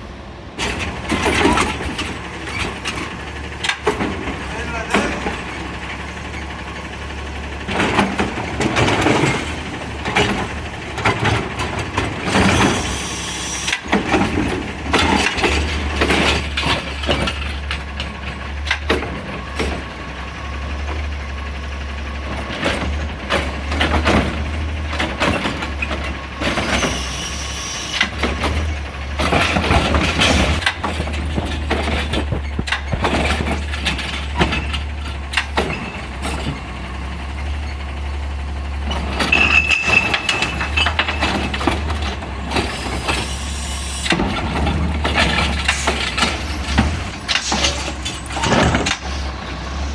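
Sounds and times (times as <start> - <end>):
garbage truck engine running: 0.0 - 49.9
loader arm clatter and hiss: 7.8 - 20.5, 22.4 - 37.0, 38.9 - 49.9.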